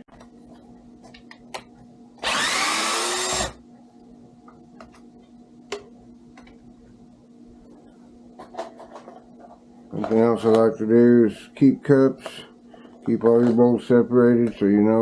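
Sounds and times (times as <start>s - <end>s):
cordless drill whirring: 2.2s - 3.6s.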